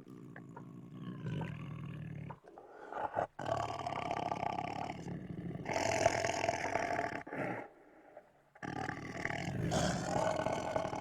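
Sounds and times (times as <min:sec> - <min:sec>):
tiger growling: 0:09.4 - 0:11.0.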